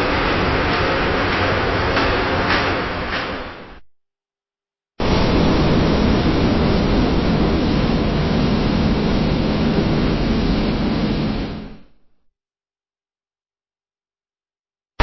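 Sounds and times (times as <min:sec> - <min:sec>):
industrial machinery din: 0:00.0 - 0:03.8.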